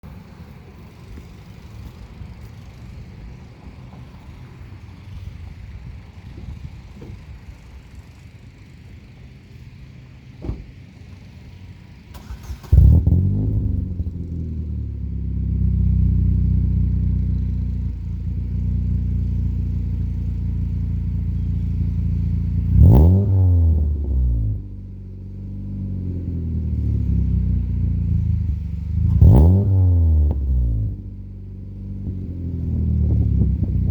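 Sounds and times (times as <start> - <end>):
car engine starting and idling: 0.0 - 33.9
engine revving: 12.1 - 33.9.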